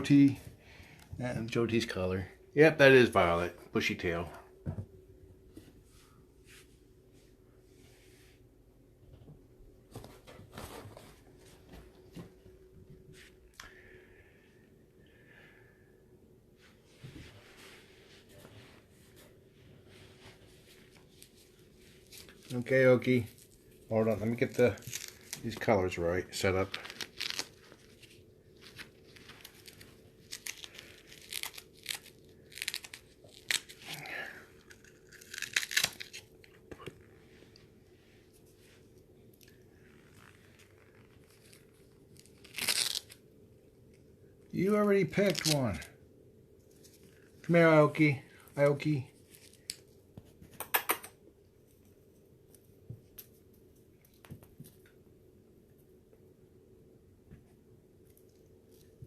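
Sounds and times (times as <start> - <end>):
hands handling crinkling items: 20.1 - 44.0, 44.6 - 45.9, 46.5 - 50.4.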